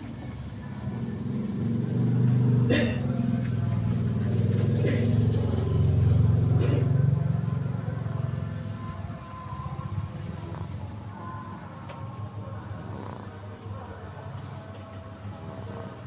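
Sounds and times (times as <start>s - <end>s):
baby snoring: 9.5s - 11.5s, 12.6s - 13.7s.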